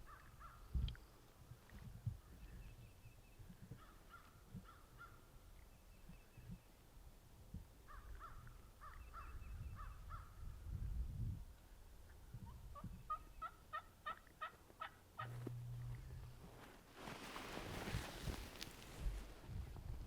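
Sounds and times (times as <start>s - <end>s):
low rumble: 15.3s - 16.6s.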